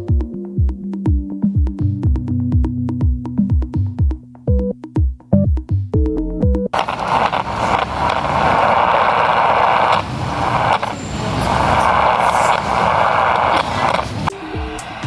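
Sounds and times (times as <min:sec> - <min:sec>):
radio static hiss with crackles: 0:06.8 - 0:15.0.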